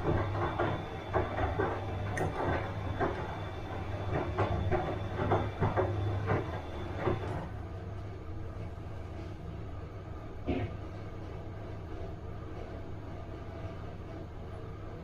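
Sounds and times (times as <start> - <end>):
washing machine drum clunking: 0.0 - 7.6
washing machine motor hum: 0.0 - 15.0.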